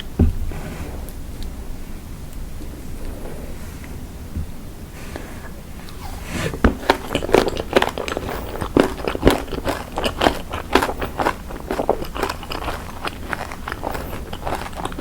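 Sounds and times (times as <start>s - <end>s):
crunching and chewing salad: 5.8s - 15.0s.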